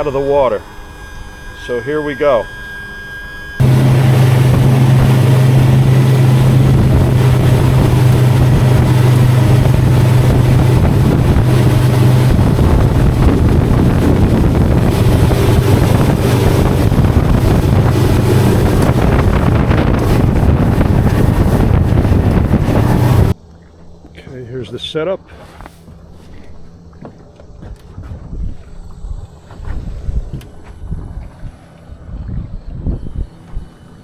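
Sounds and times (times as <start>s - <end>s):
outboard motor running: 0.0s - 24.3s
wind on microphone: 3.6s - 23.4s, 27.5s - 33.7s.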